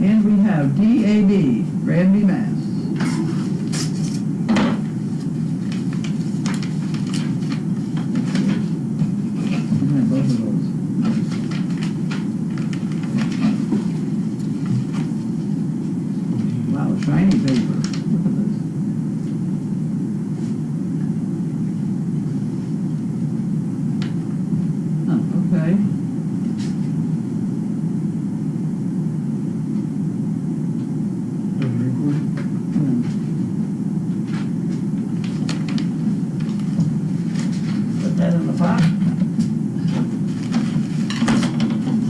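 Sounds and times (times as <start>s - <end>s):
low background hum: 0.0s - 42.0s
paper and envelopes rustling: 5.2s - 10.4s, 11.0s - 15.3s, 16.4s - 18.2s, 35.2s - 39.0s, 39.8s - 42.0s.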